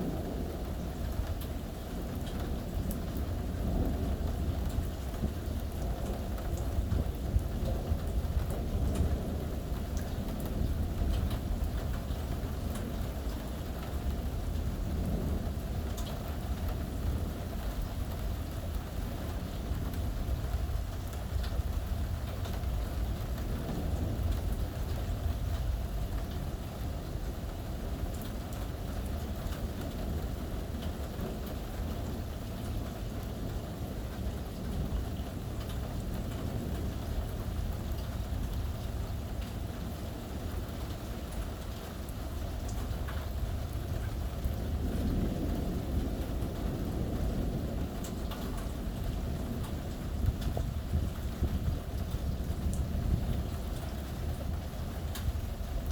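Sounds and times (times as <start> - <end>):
rain falling: 0.0 - 55.9
distant thunder rumble: 42.4 - 55.9.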